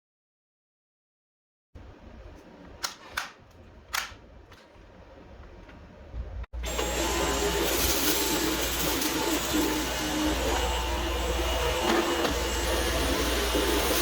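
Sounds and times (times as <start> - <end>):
sharp clicks: 2.8 - 4.6
cordless vacuum running: 6.6 - 14.0.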